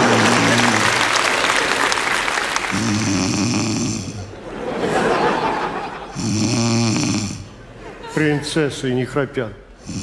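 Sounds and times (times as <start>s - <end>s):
person snoring loudly: 0.0s - 1.2s, 2.7s - 4.3s, 6.1s - 7.4s.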